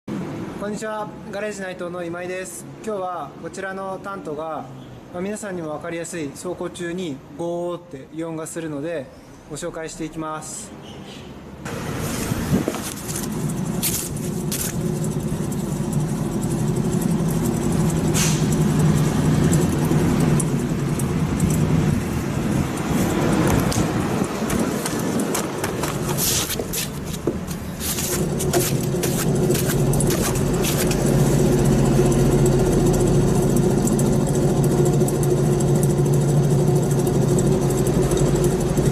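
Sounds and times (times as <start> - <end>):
road noise: 0.1 - 7.4, 9.1 - 38.9
low droning car noise: 11.6 - 38.9.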